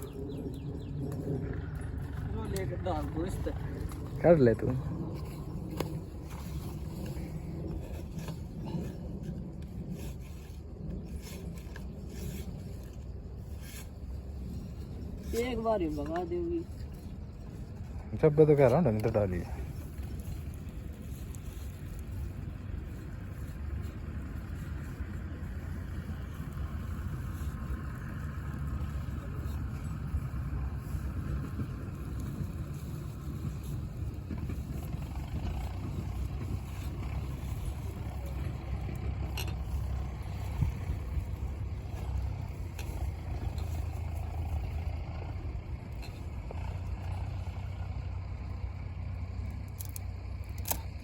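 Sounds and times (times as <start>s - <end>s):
engine idling: 0.0s - 51.0s
steady low rumble: 0.0s - 51.0s.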